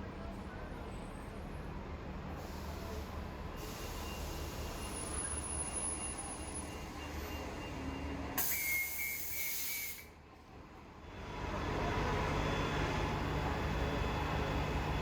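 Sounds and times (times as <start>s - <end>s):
bus engine rumble: 0.0s - 8.4s, 10.2s - 15.0s
air brakes hissing: 2.4s - 5.2s, 8.4s - 10.1s.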